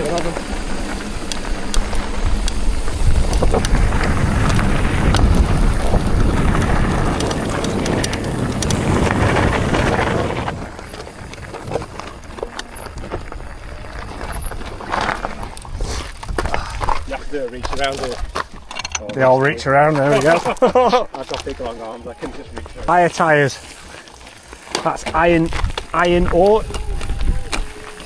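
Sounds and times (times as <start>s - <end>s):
wind buffeting microphone: 0.0s - 18.7s, 25.0s - 28.0s
bike tyres on rough ground: 0.0s - 28.0s.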